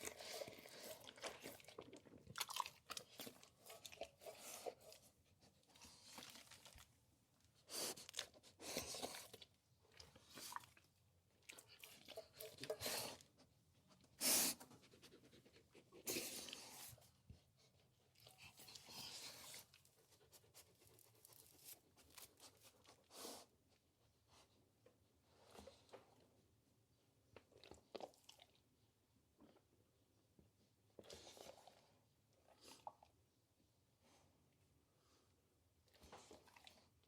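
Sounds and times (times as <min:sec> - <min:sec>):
dog chewing and crunching food: 0:00.0 - 0:14.0, 0:35.9 - 0:37.0.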